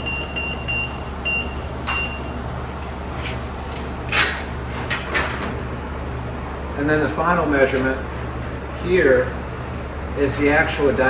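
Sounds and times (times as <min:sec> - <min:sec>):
keypad beeping: 0:00.0 - 0:02.3
low machine hum: 0:00.0 - 0:11.0.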